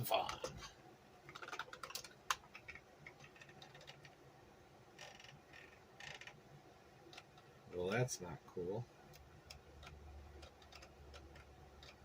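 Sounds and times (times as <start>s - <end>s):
small plastic parts clicking: 1.3s - 4.2s, 9.1s - 12.0s.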